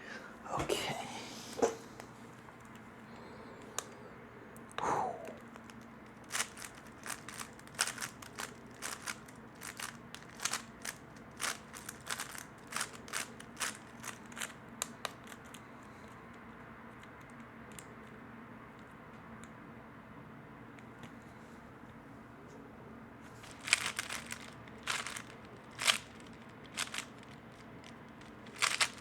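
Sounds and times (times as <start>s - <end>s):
plastic puzzle cube clicking: 5.4s - 15.6s, 23.4s - 29.0s.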